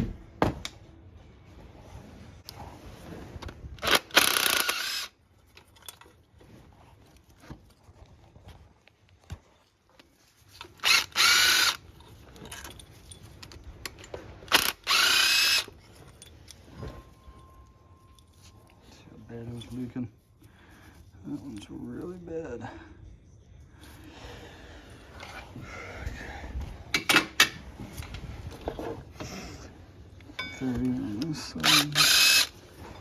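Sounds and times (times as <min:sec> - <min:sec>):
power drill whining: 0:03.8 - 0:05.2, 0:10.6 - 0:11.9, 0:14.4 - 0:15.9, 0:31.6 - 0:32.8.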